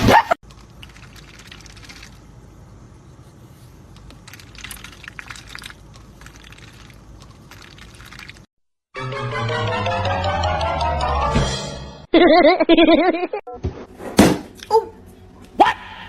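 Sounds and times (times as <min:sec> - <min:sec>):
low background hum: 0:00.1 - 0:08.5, 0:12.2 - 0:16.0.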